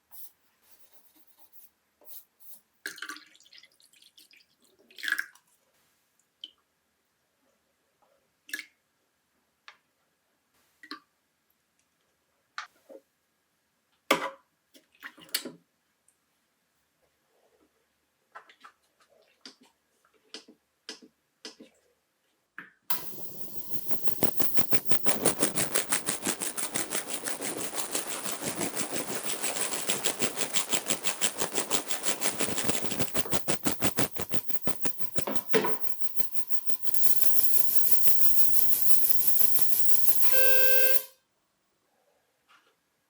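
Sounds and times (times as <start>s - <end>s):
rapid rhythmic rubbing: 22.9s - 41.1s.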